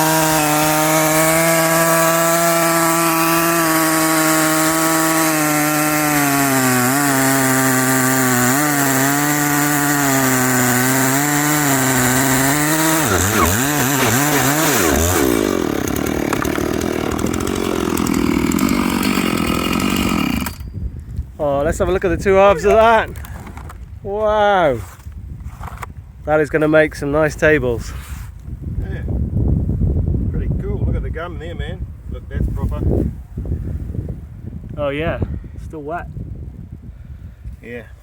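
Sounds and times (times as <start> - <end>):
chainsaw cutting through log: 0.0 - 20.8.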